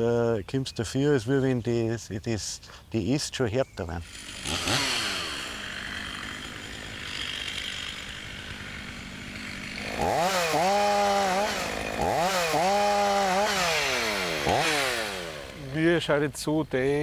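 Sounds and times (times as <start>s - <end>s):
chainsaw idling and revving: 4.0s - 17.0s.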